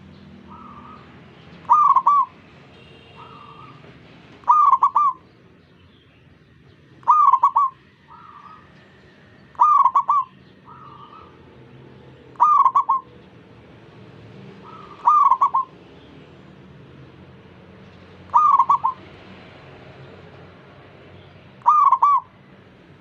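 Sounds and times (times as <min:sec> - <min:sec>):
dove cooing: 0:00.5 - 0:02.4, 0:03.2 - 0:03.8, 0:04.4 - 0:05.2, 0:07.0 - 0:08.6, 0:09.6 - 0:11.4, 0:12.4 - 0:13.1, 0:14.6 - 0:15.8, 0:18.3 - 0:19.0, 0:21.6 - 0:22.3.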